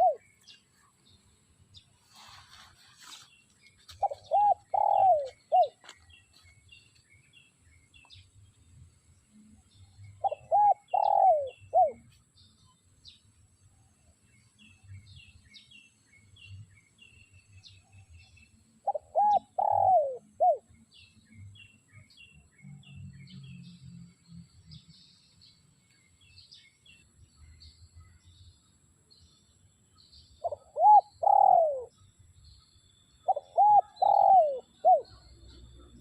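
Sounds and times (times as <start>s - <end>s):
dove cooing: 0.0s - 0.3s, 4.0s - 5.9s, 10.2s - 12.0s, 18.8s - 20.7s, 30.4s - 31.9s, 33.3s - 35.2s
small birds chirping faintly: 0.0s - 36.0s.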